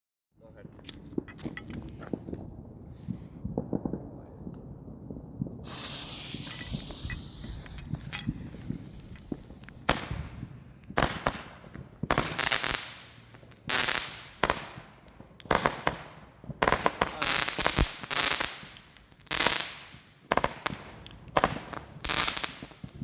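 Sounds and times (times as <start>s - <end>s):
firework bangs: 5.0s - 23.0s
firework hiss and whistle: 5.6s - 14.8s, 15.5s - 23.0s.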